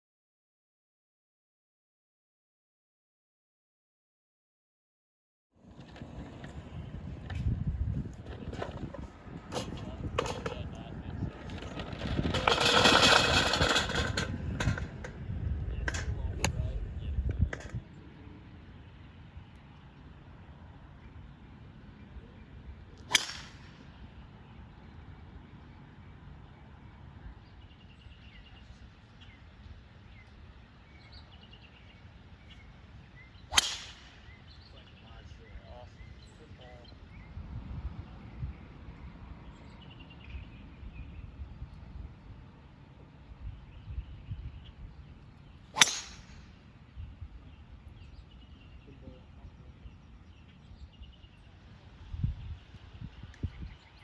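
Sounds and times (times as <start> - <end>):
birds chirping faintly: 15.6 - 23.2, 23.8 - 54.0
golf club striking ball: 23.0 - 23.9, 33.5 - 34.3, 45.7 - 46.6.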